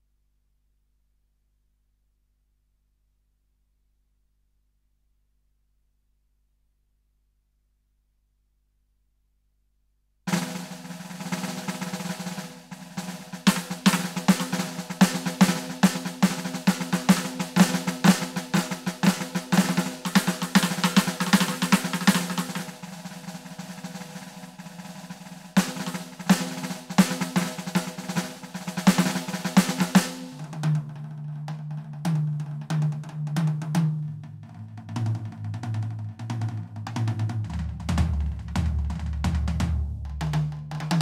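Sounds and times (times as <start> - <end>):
electronic drum kit groove: 10.3 - 24.7.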